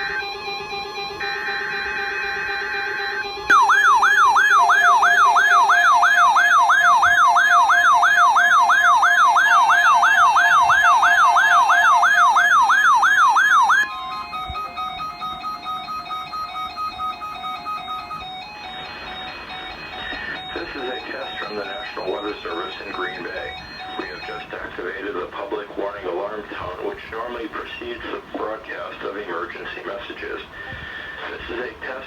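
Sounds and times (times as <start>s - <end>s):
warbling alarm tone: 0.0s - 24.6s
music: 0.0s - 25.2s.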